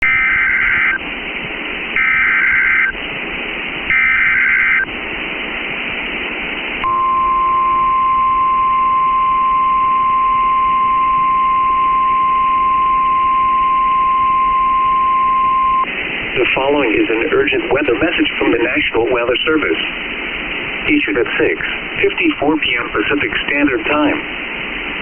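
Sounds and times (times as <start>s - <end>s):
data tone bursts: 0.0s - 1.0s, 2.0s - 3.0s, 3.9s - 4.9s, 6.8s - 15.9s
steady warning alarm tone: 0.0s - 1.0s, 2.0s - 3.0s, 3.9s - 4.9s, 6.8s - 15.9s
radio hiss: 0.0s - 8.4s, 14.5s - 25.0s.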